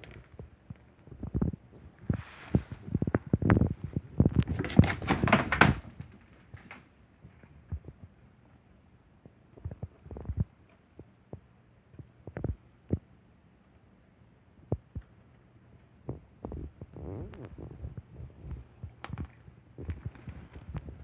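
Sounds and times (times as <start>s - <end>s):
cat scrambling: 3.3s - 6.2s.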